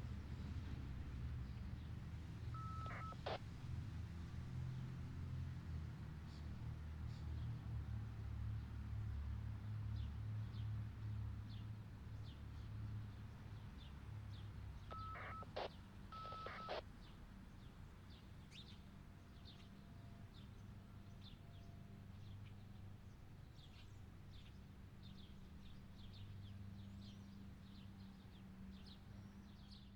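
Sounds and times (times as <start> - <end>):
birds chirping: 2.6 - 3.4, 14.8 - 16.8
short electronic beeps: 2.6 - 3.4, 14.9 - 16.8.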